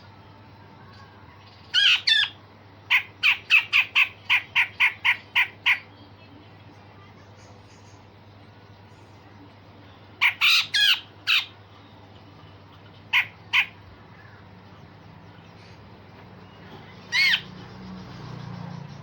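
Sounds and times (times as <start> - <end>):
bird giving harsh rasping calls: 1.7 - 5.9, 10.2 - 11.6, 13.1 - 14.4, 17.0 - 17.9.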